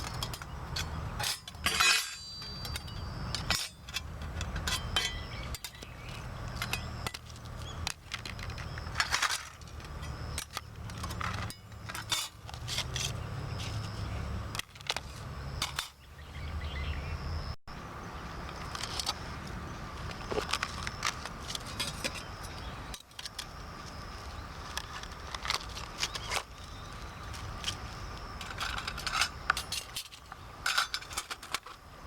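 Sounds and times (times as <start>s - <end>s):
sheet metal clinking: 0.0s - 5.8s.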